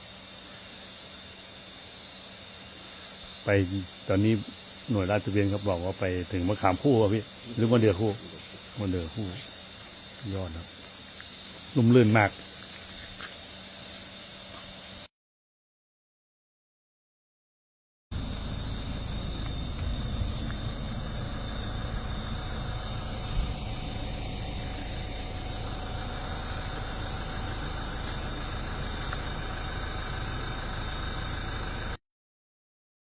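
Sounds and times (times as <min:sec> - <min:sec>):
high-pitched insect drone: 0:00.0 - 0:15.1, 0:18.2 - 0:32.0
low rumble: 0:18.2 - 0:32.0.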